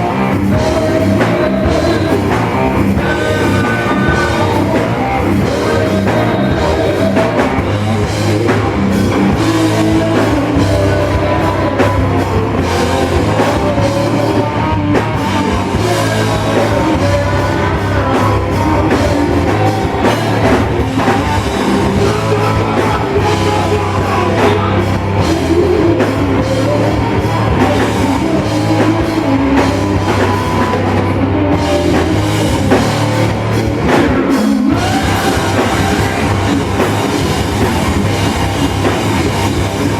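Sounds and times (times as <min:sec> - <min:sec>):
drum kit beat: 0:00.0 - 0:39.9
rock band playing: 0:00.0 - 0:39.9.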